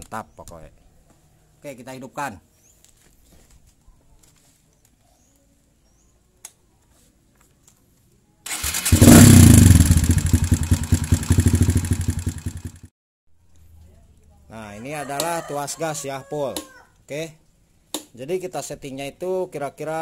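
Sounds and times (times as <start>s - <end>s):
motorcycle engine starting and running: 8.5s - 12.9s.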